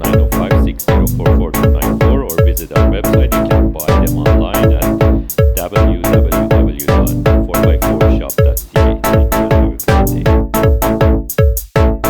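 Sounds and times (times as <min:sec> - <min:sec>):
punchy kick drum beat: 0:00.0 - 0:12.0
sustained synthesizer notes: 0:00.0 - 0:12.0.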